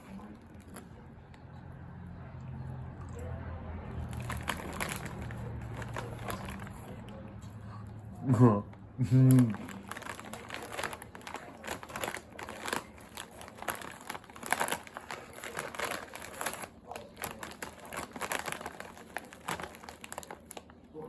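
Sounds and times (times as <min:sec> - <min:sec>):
crinkling and crackling: 0:00.0 - 0:01.4, 0:03.9 - 0:07.2, 0:08.7 - 0:21.0.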